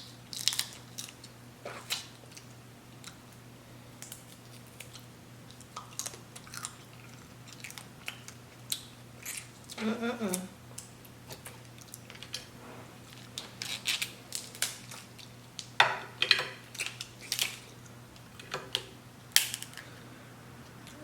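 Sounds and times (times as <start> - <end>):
crab shell cracking and crunching: 0.3 - 3.2, 4.0 - 9.7, 13.1 - 19.9.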